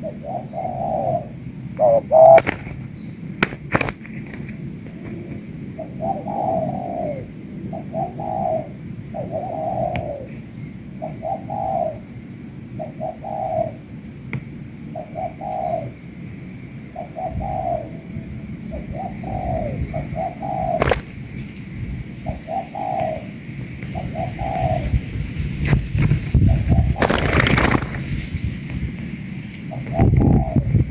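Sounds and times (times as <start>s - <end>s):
doves cooing: 0.0s - 12.2s, 12.8s - 13.8s, 16.9s - 25.2s, 26.0s - 28.4s, 29.7s - 30.9s.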